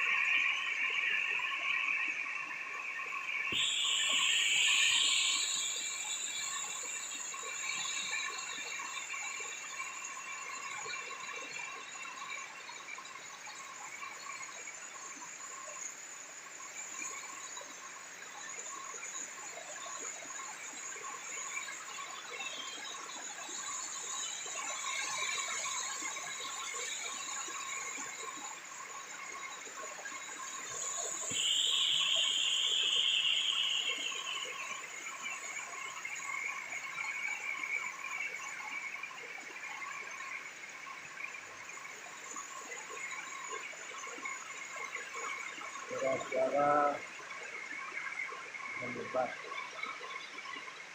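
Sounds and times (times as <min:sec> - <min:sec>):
high steady tones: 0:00.0 - 0:10.6, 0:24.4 - 0:38.4.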